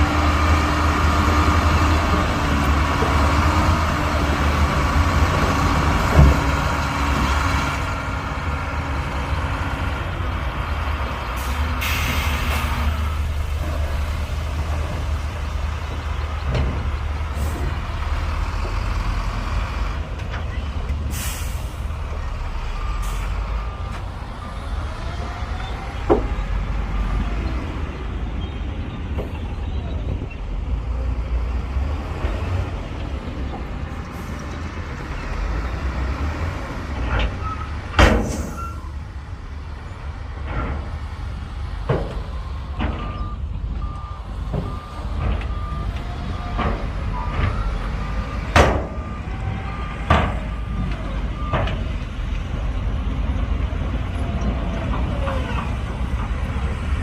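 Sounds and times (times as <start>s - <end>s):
diesel machinery rumbling: 0.0s - 57.0s
reversing alarm beeping: 42.3s - 51.8s.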